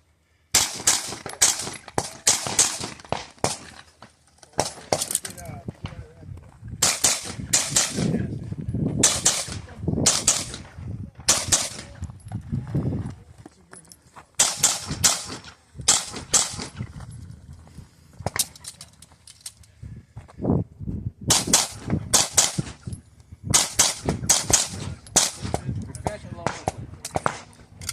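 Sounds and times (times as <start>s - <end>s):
handgun shots: 6.8s - 8.2s, 9.0s - 10.7s, 11.3s - 11.9s, 14.4s - 16.8s, 21.3s - 22.8s, 26.4s - 27.6s.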